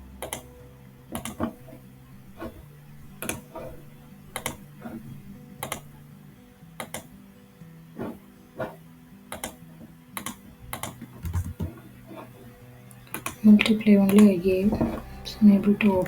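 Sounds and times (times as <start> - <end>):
mouse and keyboard clicks: 1.1 - 1.6, 3.2 - 3.7, 4.4 - 4.6, 5.6 - 5.9, 6.8 - 7.1, 9.3 - 9.6, 10.2 - 11.8, 13.1 - 15.0.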